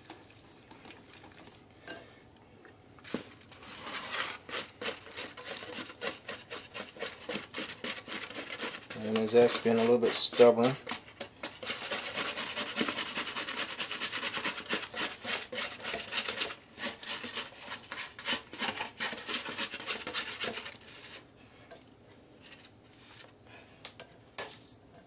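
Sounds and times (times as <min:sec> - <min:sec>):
whisk beating liquid in bowl: 0:03.8 - 0:21.2.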